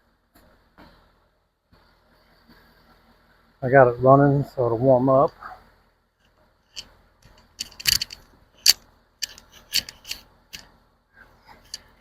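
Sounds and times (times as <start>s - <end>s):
sharp clicks and knocks: 6.2s - 10.8s.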